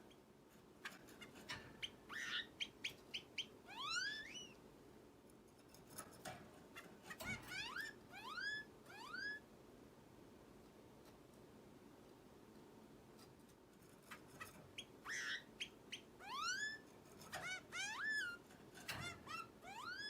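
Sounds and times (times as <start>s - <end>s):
finch upward-sweeping calls: 1.8s - 4.6s, 14.8s - 18.4s.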